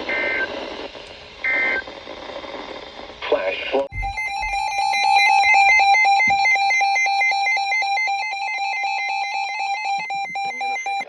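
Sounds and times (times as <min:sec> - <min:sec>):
rapid pulsing alert beep: 0:03.9 - 0:06.1.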